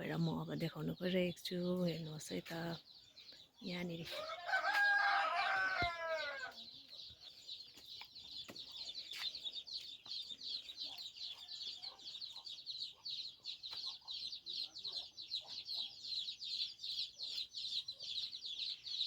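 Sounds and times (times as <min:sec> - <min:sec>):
chicks peeping: 0:00.0 - 0:19.0
rooster crowing: 0:04.2 - 0:06.6.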